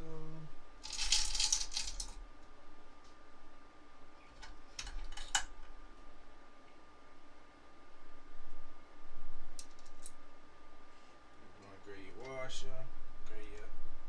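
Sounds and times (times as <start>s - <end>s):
metal engine parts clicking: 0.8s - 2.2s.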